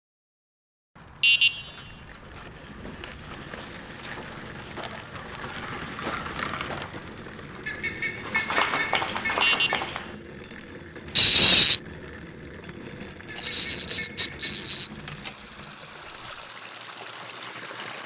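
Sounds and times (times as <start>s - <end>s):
scattered clicks: 4.0s - 16.4s
chirping calls: 7.6s - 10.3s, 11.1s - 11.8s, 13.2s - 16.2s.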